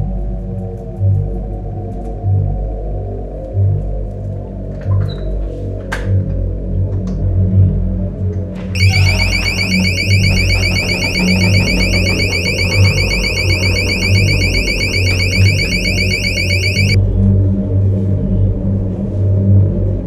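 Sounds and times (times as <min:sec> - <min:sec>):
electronic alarm ringing: 0:08.8 - 0:17.0.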